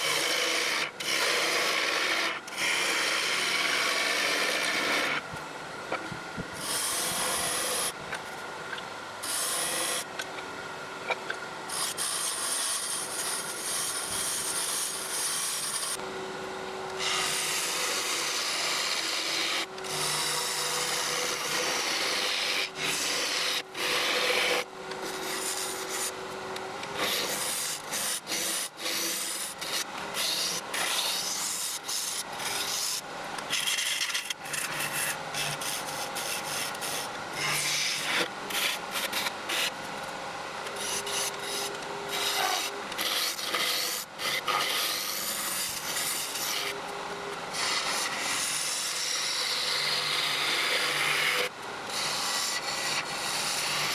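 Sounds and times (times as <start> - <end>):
lathe tool rasping on wood: 0.0 - 5.2, 6.6 - 7.9, 9.2 - 10.1, 11.7 - 16.0, 17.0 - 26.2, 26.8 - 39.7, 40.7 - 46.8, 47.5 - 53.9.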